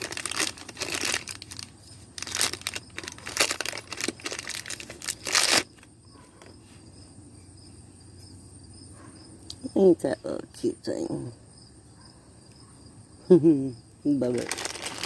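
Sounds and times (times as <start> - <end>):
plastic packaging crinkling: 0.0 - 5.9, 14.2 - 15.0.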